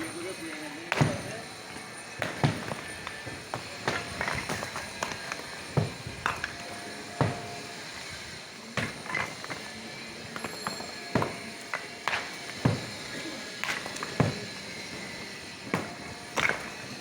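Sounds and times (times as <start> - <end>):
steady background noise: 0.0 - 17.0
sharp knocks and thuds: 0.9 - 1.3, 2.2 - 2.9, 3.5 - 6.5, 12.1 - 14.5.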